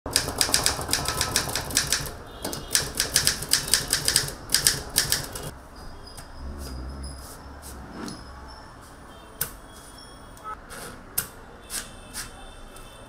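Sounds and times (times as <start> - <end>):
typewriter key strikes: 0.1 - 5.5.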